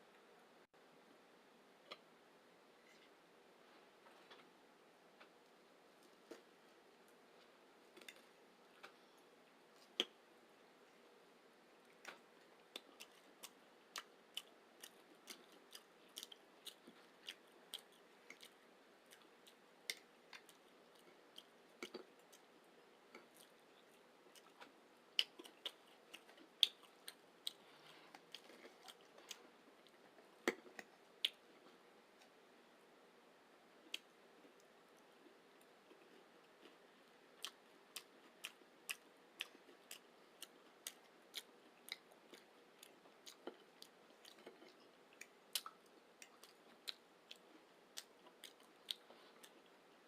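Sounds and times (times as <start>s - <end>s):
wet chewing and mouth clicks: 11.9s - 32.4s, 33.9s - 50.0s.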